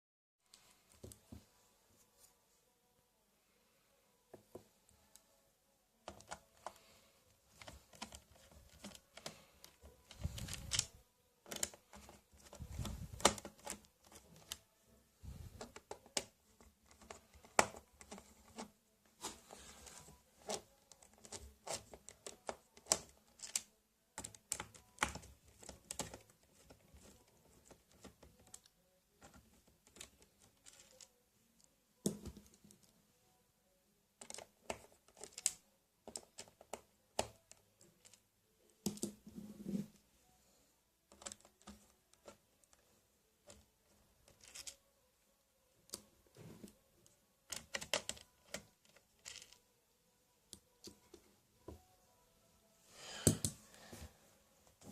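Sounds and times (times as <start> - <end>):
laptop keys clicking and tapping: 7.6 - 10.9, 11.5 - 14.6, 20.4 - 31.1, 34.2 - 38.2, 38.8 - 39.2, 41.1 - 42.4, 47.5 - 49.6.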